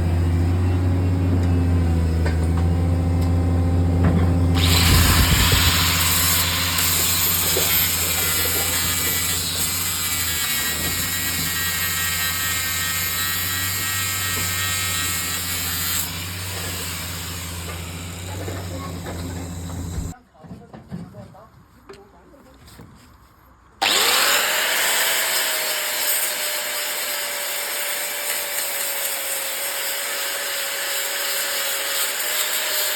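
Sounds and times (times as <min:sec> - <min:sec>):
low machine hum: 0:17.1 - 0:20.1.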